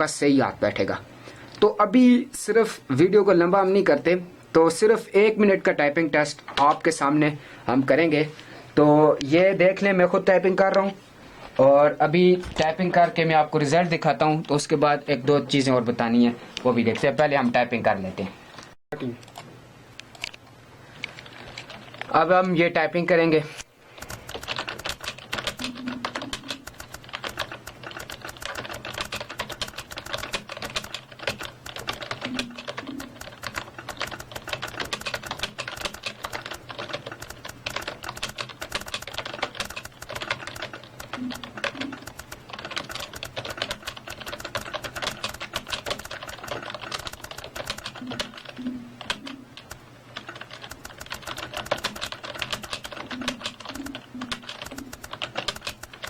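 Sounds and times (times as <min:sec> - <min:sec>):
fast keyboard typing: 0:05.8 - 0:08.1, 0:12.6 - 0:17.7, 0:21.1 - 0:23.1, 0:23.9 - 0:56.0.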